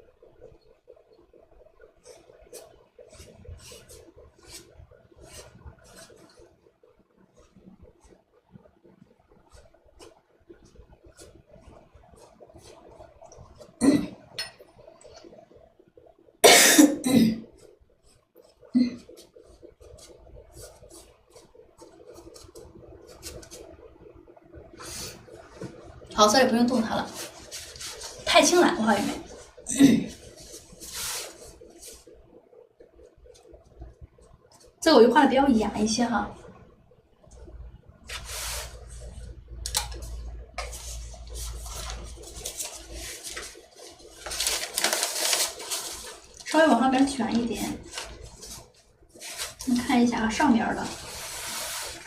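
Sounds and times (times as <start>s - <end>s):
low room hum: 0.0s - 52.0s
brush swishing and scratching: 2.1s - 6.5s, 26.8s - 29.5s, 30.2s - 32.1s, 40.6s - 46.5s, 47.4s - 49.9s, 50.7s - 52.0s.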